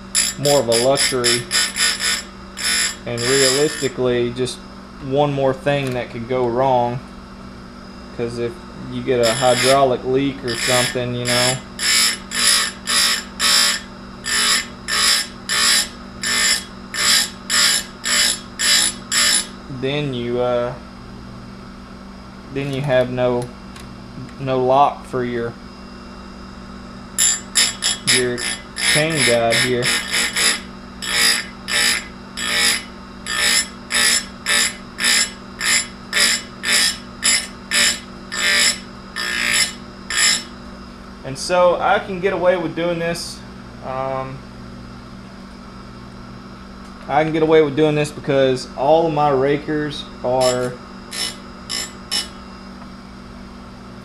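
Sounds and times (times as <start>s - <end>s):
grinder motor hum: 0.0s - 21.5s, 22.3s - 44.6s, 45.2s - 54.0s
file rasping on saw chain: 0.1s - 4.0s, 9.2s - 9.9s, 10.5s - 19.5s, 27.2s - 40.5s, 50.4s - 52.4s.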